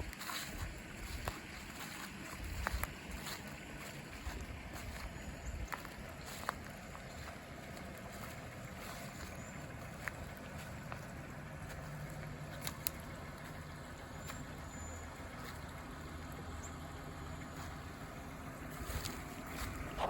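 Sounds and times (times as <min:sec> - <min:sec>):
faint clicks: 0:12.0 - 0:13.6.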